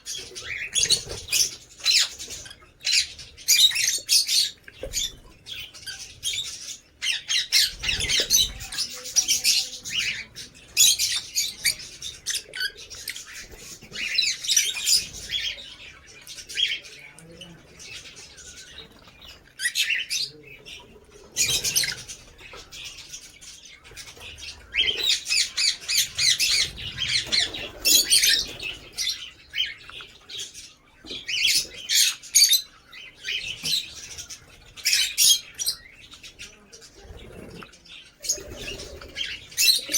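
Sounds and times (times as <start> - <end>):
lovebirds chattering: 0.0 - 39.9.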